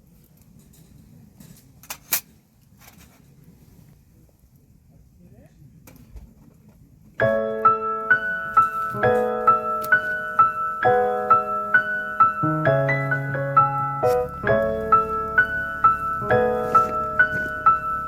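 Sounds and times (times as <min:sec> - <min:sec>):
gentle piano melody: 0:07.2 - 0:18.0.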